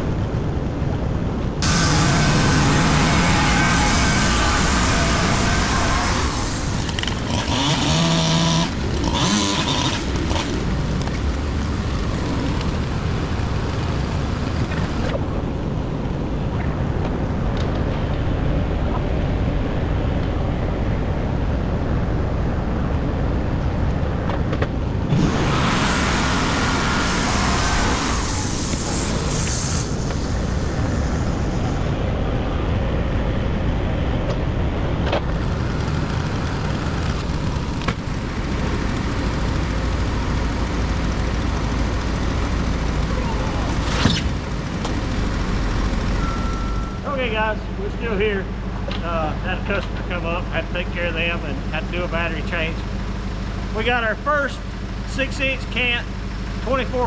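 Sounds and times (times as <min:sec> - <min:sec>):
higher-pitched whine: 0:01.5 - 0:23.0, 0:25.0 - 0:53.1
band blade cutting log: 0:01.6 - 0:11.2, 0:43.7 - 0:45.0
sawmill engine running: 0:01.6 - 0:23.1, 0:24.9 - 0:57.0.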